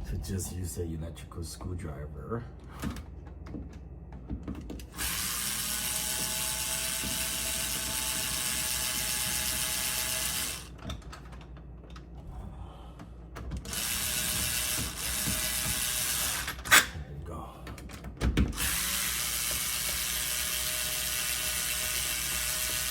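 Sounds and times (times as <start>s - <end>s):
electric screwdriver motor whine: 4.9s - 10.8s, 13.7s - 16.8s, 18.6s - 22.9s.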